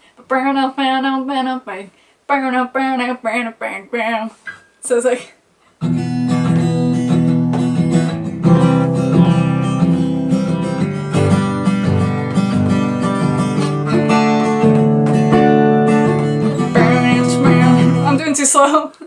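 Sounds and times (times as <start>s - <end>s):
acoustic guitar strumming chords: 5.8s - 18.5s.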